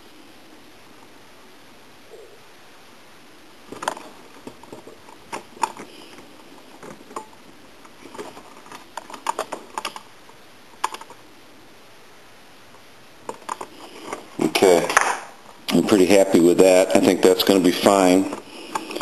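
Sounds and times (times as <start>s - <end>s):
small parts and tools clicking: 8.1s - 10.1s.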